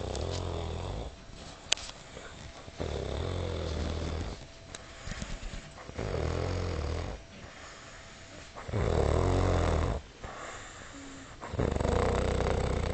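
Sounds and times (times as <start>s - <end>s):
man snoring heavily: 0.0s - 1.1s, 2.8s - 4.4s, 6.0s - 7.2s, 8.7s - 12.9s
quiet breaths: 0.0s - 12.9s.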